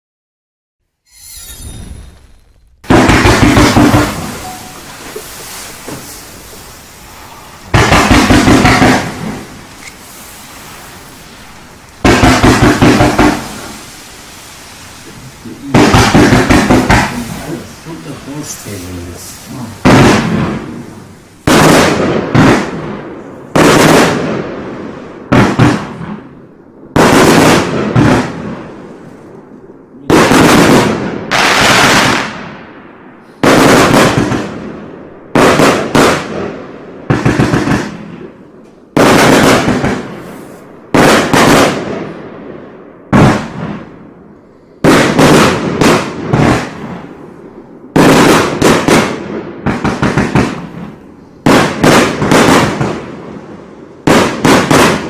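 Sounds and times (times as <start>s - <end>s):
firework bangs with crackling tail: 1.4s - 55.0s.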